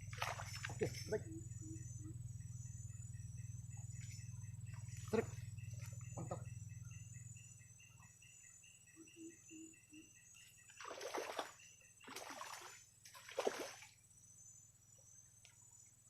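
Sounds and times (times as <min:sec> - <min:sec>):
fish splashing at water surface: 0:10.8 - 0:13.9.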